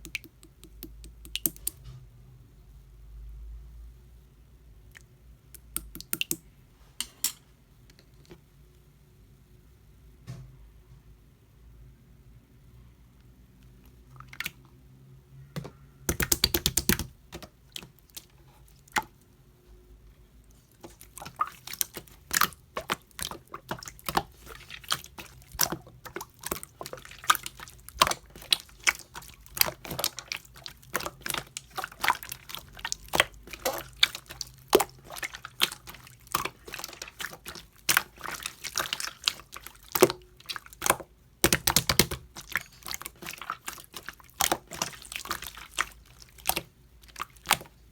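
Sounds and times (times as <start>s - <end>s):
slime clicking and popping: 0.0s - 1.8s, 5.6s - 6.4s, 16.1s - 18.3s, 21.1s - 47.7s.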